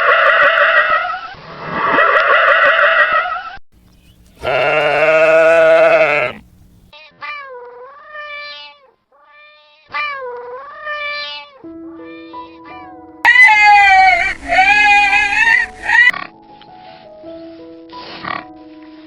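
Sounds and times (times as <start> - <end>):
goat bleating: 4.1 - 6.9, 13.3 - 16.1.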